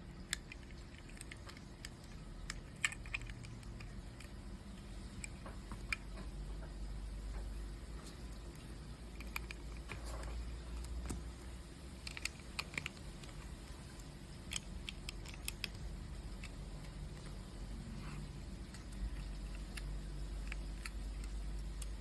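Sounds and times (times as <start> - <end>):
plastic bricks clicking and rattling: 0.0 - 4.4, 12.0 - 17.3
low steady hum: 0.0 - 22.0.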